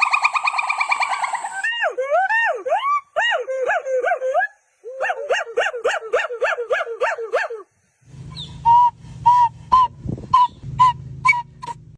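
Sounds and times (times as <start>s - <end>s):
monkey squeaky calls: 0.0s - 1.8s
monkey whooping calls: 0.0s - 7.6s
low steady hum: 7.9s - 11.9s.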